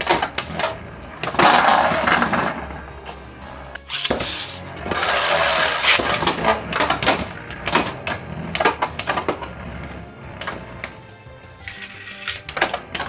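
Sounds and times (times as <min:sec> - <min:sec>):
spinning top hissing: 0:03.7 - 0:11.0, 0:11.6 - 0:12.6
plastic tops clacking and rattling: 0:03.8 - 0:09.6, 0:11.6 - 0:13.0.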